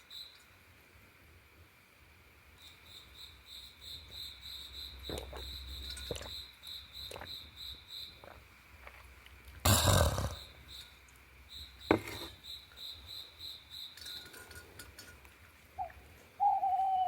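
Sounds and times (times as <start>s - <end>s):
crickets chirping: 0.0s - 17.0s.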